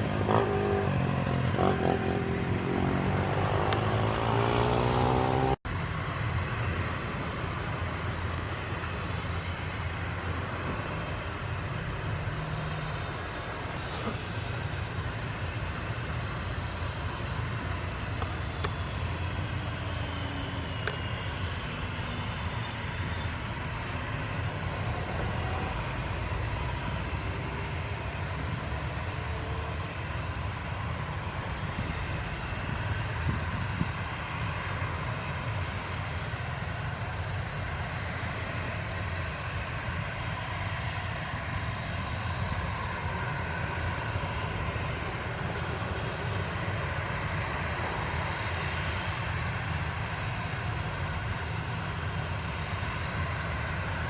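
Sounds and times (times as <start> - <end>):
faint engine whine: 0.0 - 54.0
jet engines rumbling: 0.0 - 54.0.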